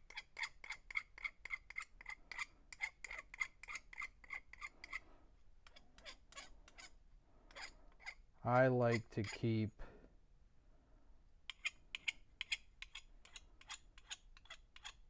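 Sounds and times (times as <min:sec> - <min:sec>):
metal file scraping lead: 0:05.7 - 0:09.4.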